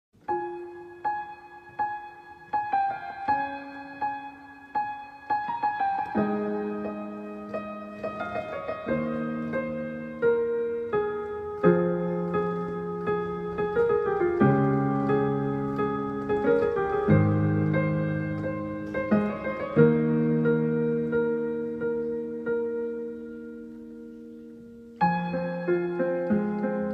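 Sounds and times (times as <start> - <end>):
slow gentle piano piece: 0.2 - 26.9.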